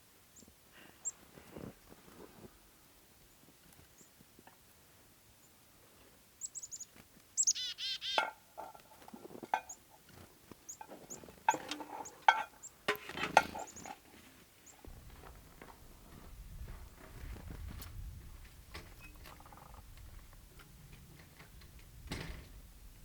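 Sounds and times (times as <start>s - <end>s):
small birds chirping: 3.3s - 4.5s, 5.3s - 9.9s, 13.6s - 14.0s, 18.9s - 20.9s.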